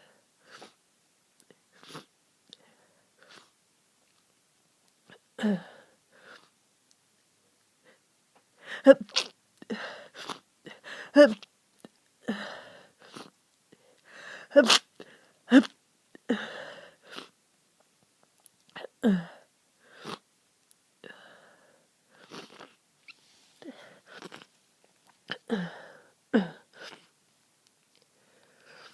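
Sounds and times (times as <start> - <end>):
person sniffling: 1.7 - 2.1, 8.6 - 11.4, 12.3 - 17.4, 18.8 - 20.2, 25.3 - 27.1, 28.2 - 28.9
breathy in-breath: 9.7 - 11.2, 12.3 - 15.4, 16.3 - 17.3, 21.0 - 22.4, 25.5 - 27.1, 28.1 - 28.9
person sneezing: 11.1 - 11.4, 14.5 - 14.9.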